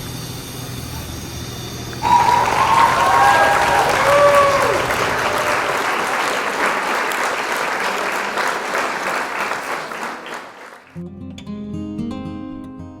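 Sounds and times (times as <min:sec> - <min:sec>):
strummed acoustic guitar music: 0:11.0 - 0:13.0.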